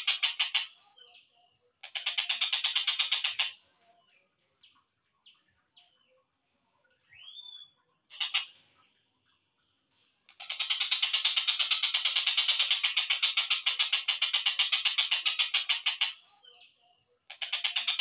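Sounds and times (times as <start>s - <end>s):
kingfisher chattering rattle: 0.0s - 0.8s, 1.8s - 3.6s, 8.1s - 8.6s, 10.3s - 16.2s, 17.3s - 18.0s.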